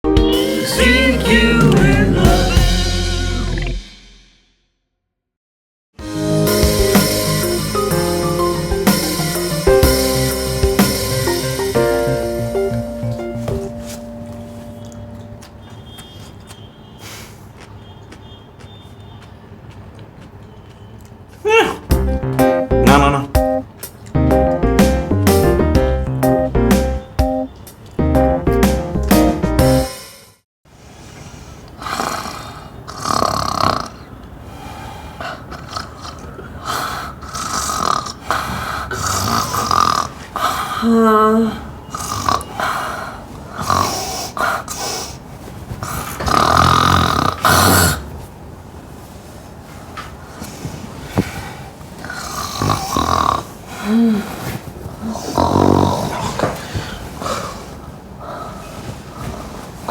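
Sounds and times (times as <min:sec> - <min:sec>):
piano: 0:00.0 - 0:03.9, 0:06.0 - 0:15.6, 0:21.9 - 0:30.2
person snoring heavily: 0:31.8 - 0:45.2, 0:45.8 - 0:48.1, 0:51.2 - 0:58.7.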